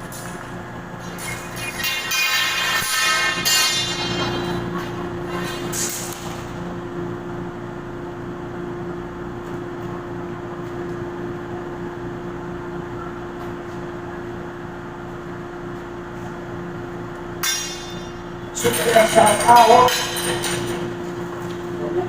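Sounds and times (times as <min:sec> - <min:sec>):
steady mechanical hum and whir: 0:00.0 - 0:22.0.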